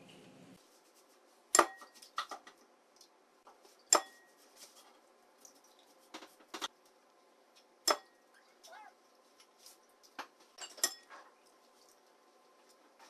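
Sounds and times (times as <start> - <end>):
kitchenware clinking against bowl: 10.6 - 11.4.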